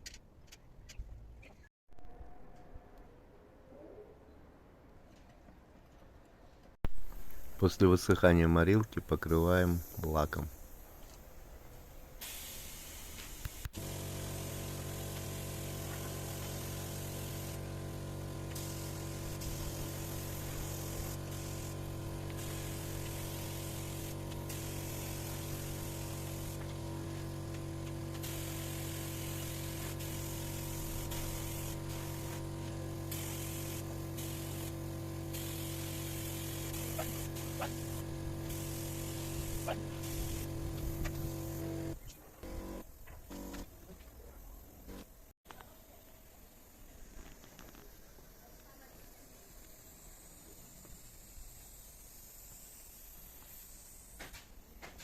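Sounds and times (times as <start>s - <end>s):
paint sprayer hiss: 6.9s - 43.7s, 44.7s - 55.0s
paint sprayer motor hum: 8.8s - 43.7s, 46.6s - 54.9s.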